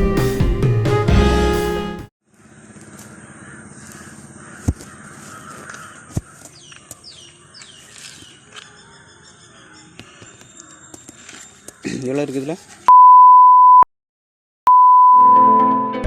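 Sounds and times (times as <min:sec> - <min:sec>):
outdoor background noise: 0:02.2 - 0:12.9
birds calling: 0:02.3 - 0:12.9.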